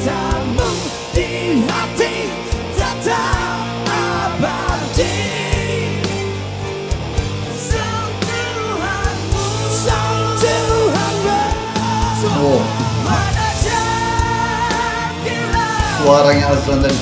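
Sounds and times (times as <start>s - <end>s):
live rock band: 0.0s - 17.0s
men singing: 0.0s - 17.0s.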